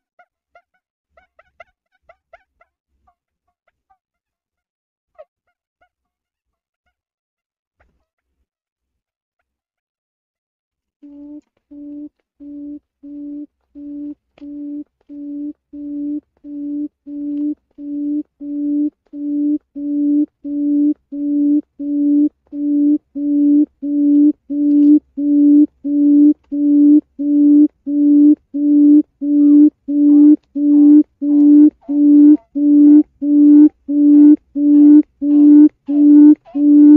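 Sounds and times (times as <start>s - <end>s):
quail call low hoots: 11.0s - 36.9s.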